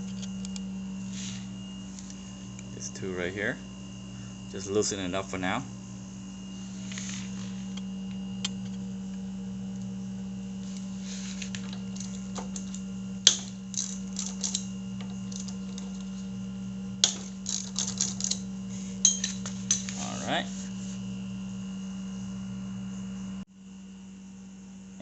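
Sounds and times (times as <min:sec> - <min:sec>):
steady low hum: 0:00.0 - 0:25.0
hand tool clicking on bolts: 0:12.0 - 0:16.0, 0:17.0 - 0:18.4.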